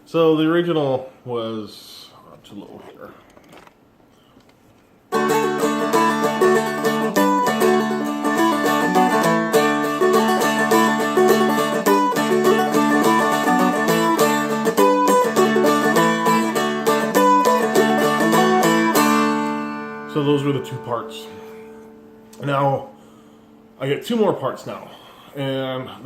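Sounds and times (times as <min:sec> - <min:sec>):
dulcimer playing a jig: 0:05.1 - 0:21.9.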